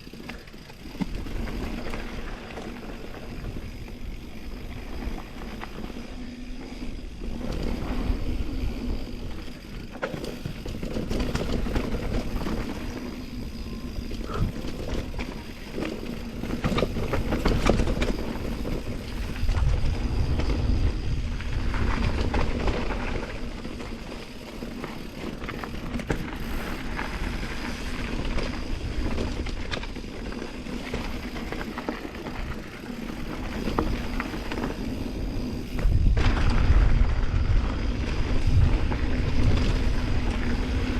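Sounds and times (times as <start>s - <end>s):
bike rattling over bumps: 0.0s - 40.9s
wind buffeting microphone: 2.9s - 24.3s, 30.8s - 40.9s.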